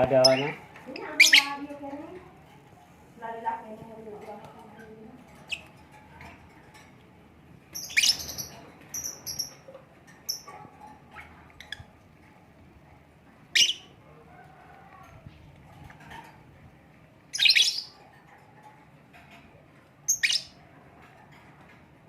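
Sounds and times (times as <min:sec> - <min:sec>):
lovebirds chirping: 0:00.0 - 0:02.4, 0:03.2 - 0:06.0, 0:07.7 - 0:11.9, 0:13.5 - 0:14.0, 0:17.3 - 0:18.0, 0:20.1 - 0:20.6.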